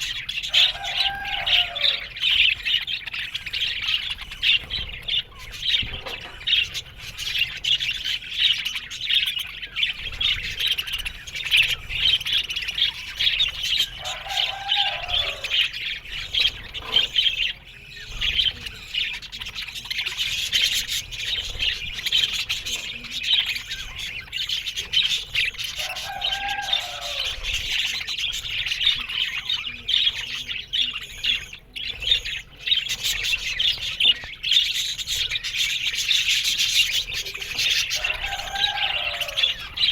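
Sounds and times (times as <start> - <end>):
low arching bird call: 0.0 - 2.7, 25.1 - 29.0
budgerigars chattering: 0.0 - 39.9.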